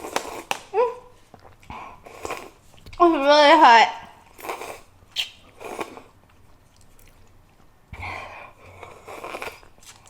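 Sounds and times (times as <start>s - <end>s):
muffled chewing: 0.0s - 3.0s, 5.6s - 7.8s
wet mouth sounds: 0.0s - 3.0s, 4.4s - 7.4s, 8.9s - 10.0s.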